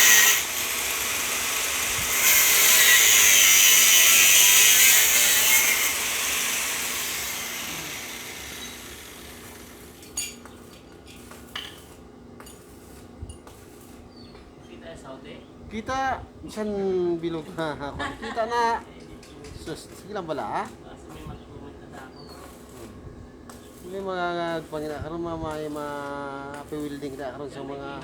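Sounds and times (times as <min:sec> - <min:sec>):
power grinder on metal: 0:00.0 - 0:10.1.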